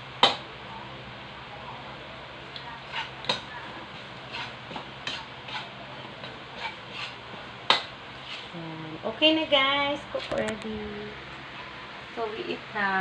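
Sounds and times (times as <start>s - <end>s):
food sizzling: 0.0s - 13.0s
utensil scraping frying pan: 2.8s - 8.6s.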